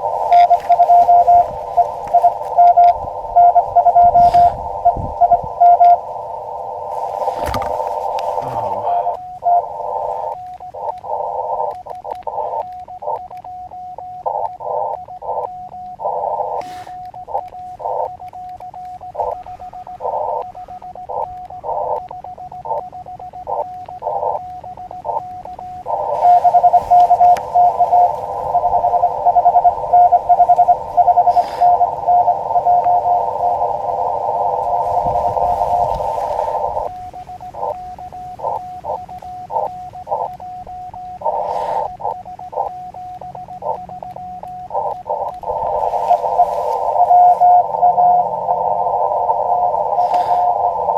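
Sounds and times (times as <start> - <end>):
morse code tone: 0.0 - 50.9
hiss: 16.6 - 17.0, 49.9 - 50.8.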